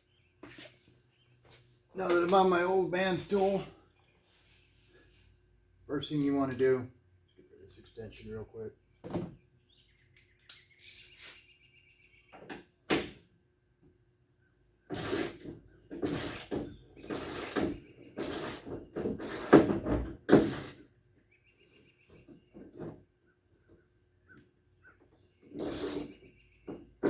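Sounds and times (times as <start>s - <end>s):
ratchet clicking: 14.9s - 15.4s, 17.1s - 19.7s, 25.6s - 26.1s.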